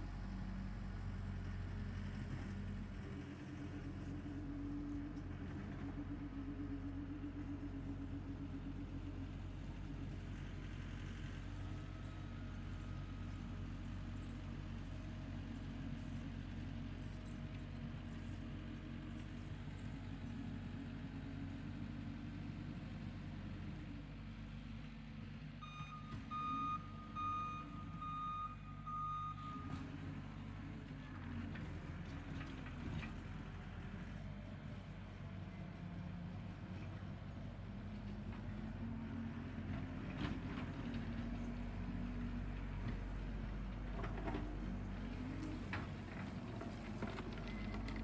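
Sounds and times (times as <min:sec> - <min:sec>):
tractor engine running: 0:00.0 - 0:48.0
backup alarm beeping: 0:25.6 - 0:29.6.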